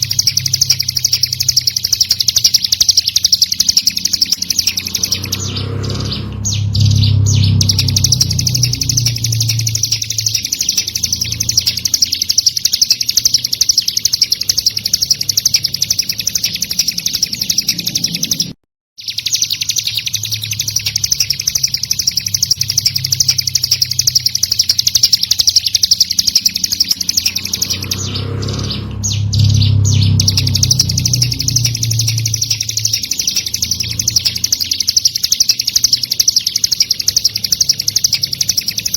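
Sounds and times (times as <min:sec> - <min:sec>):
bird singing rapid chirps: 0:00.0 - 0:38.9
low rumble: 0:04.4 - 0:11.6, 0:27.0 - 0:33.1.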